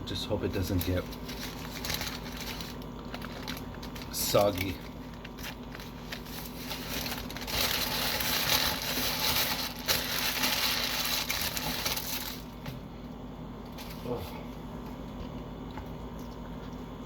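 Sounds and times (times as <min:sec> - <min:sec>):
sandwich wrapping crinkling: 0:00.6 - 0:12.7.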